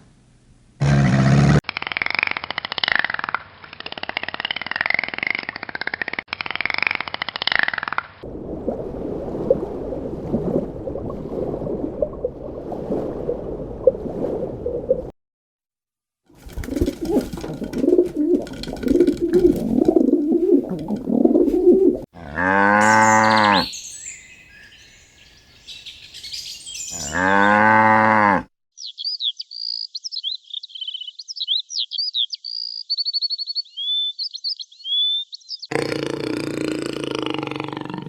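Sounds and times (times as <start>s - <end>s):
low pulsing animal calls: 16.8s - 28.4s
cow mooing: 22.2s - 23.8s, 26.9s - 28.5s.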